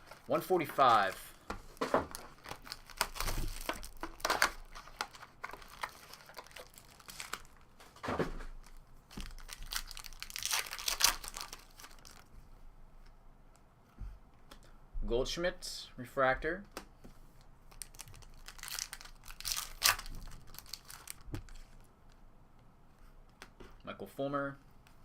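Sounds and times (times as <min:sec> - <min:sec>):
card pack wrappers tearing: 0:02.1 - 0:07.6, 0:09.1 - 0:12.2, 0:17.7 - 0:21.2.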